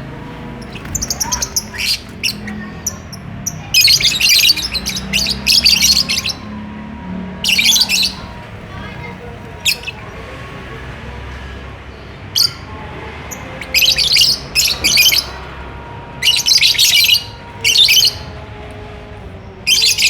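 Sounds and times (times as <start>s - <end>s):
lovebirds chattering: 0.0s - 20.0s.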